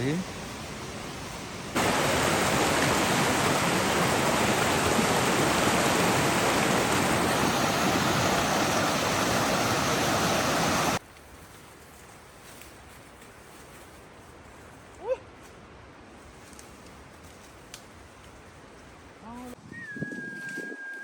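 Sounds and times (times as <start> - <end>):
river water rushing: 1.5 - 11.0.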